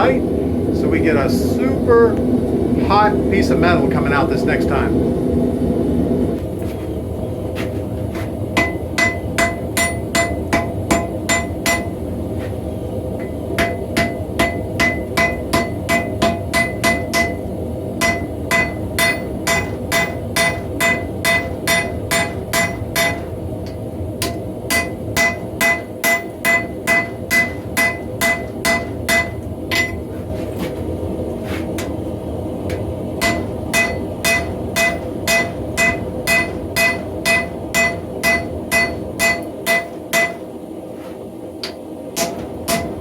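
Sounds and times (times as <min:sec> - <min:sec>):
gas forge roaring: 0:00.0 - 0:43.0
hammer ringing on anvil: 0:08.6 - 0:12.0, 0:13.2 - 0:17.4, 0:18.0 - 0:23.3, 0:24.2 - 0:30.0, 0:33.2 - 0:40.4, 0:42.2 - 0:43.0.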